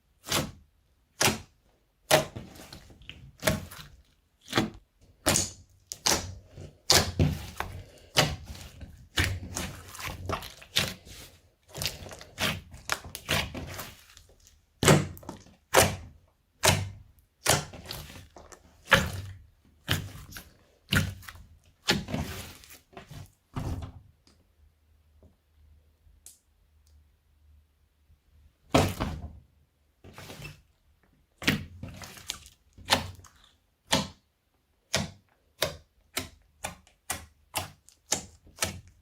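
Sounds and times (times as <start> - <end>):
slime slapping and popping: 2.1 - 14.2.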